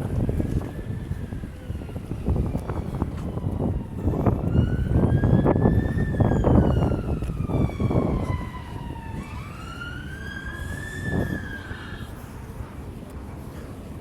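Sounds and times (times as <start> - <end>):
emergency siren wailing: 0.0 - 12.4
low rumbling noise: 0.0 - 14.0.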